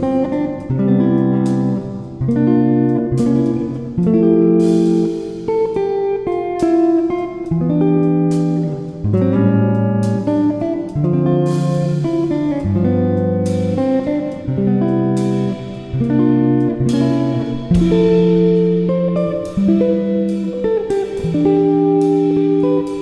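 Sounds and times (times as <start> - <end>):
guitar background music: 0.0 - 23.0
percussive stroke: 11.1 - 23.0.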